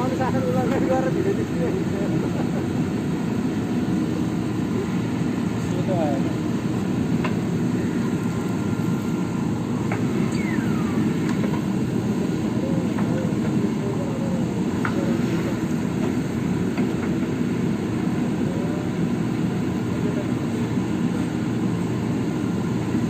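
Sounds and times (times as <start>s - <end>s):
diesel engine running: 0.0s - 23.0s
falling squeal: 10.2s - 11.3s.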